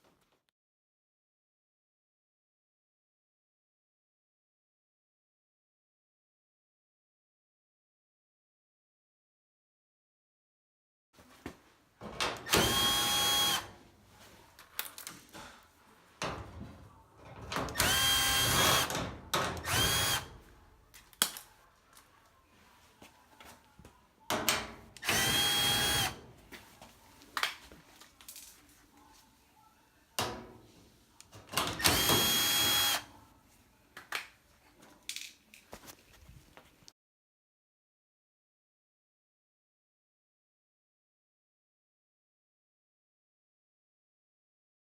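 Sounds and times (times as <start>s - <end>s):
power drill whining: 12.4s - 13.7s, 17.8s - 18.9s, 19.6s - 20.3s, 25.0s - 26.2s, 31.8s - 33.0s.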